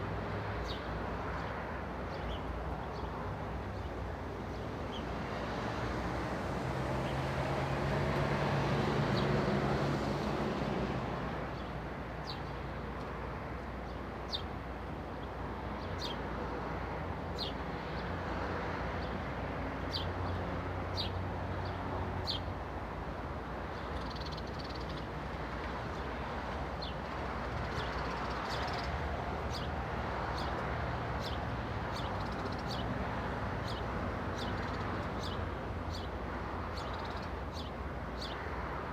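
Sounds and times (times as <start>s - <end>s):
distant traffic hum: 0.0s - 38.9s
vehicle passing by: 5.4s - 11.4s.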